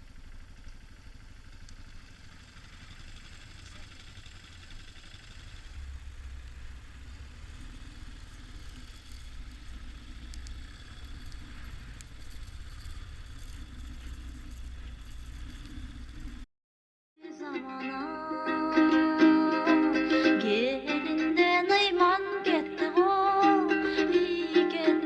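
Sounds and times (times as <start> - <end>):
motorcycle engine running: 0.0 - 16.5
faint clicks: 0.6 - 2.1, 7.5 - 16.4.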